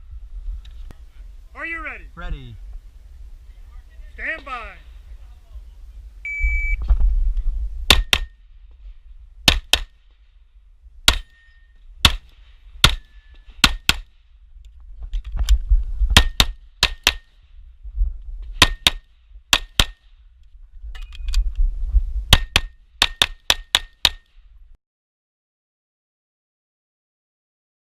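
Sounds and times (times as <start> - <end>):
low rumble of movement: 4.9 - 9.5, 14.2 - 16.7, 17.4 - 18.6, 20.2 - 22.4
pistol shots: 9.4 - 10.0.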